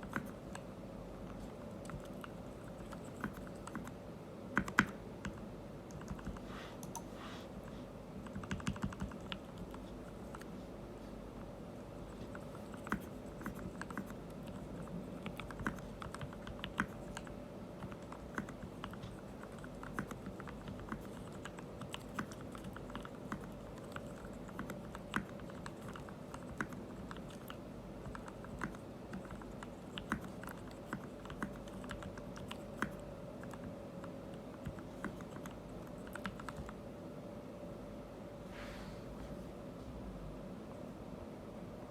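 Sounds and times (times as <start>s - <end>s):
mechanical keyboard typing: 0.0s - 0.6s, 1.7s - 7.0s, 8.2s - 10.5s, 12.0s - 36.8s.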